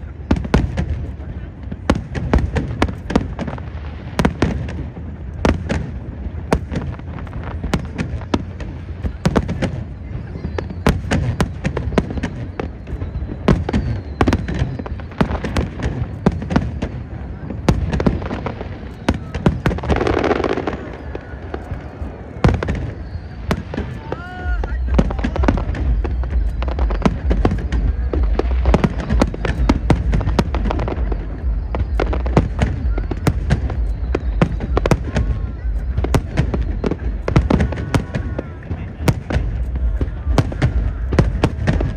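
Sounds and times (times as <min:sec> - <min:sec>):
fireworks bangs and crackles: 0:00.0 - 0:41.9
rolling rumble: 0:11.2 - 0:41.9.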